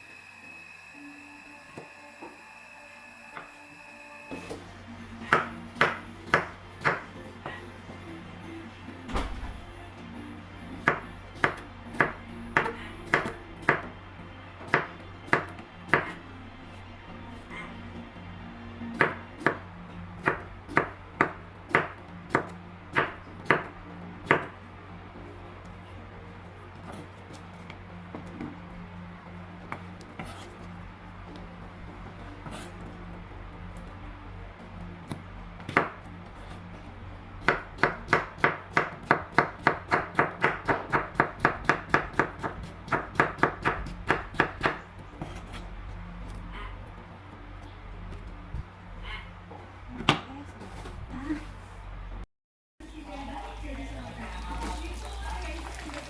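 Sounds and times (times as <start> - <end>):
chopping on hard surface: 5.3 - 7.1, 14.7 - 16.2, 37.4 - 45.4.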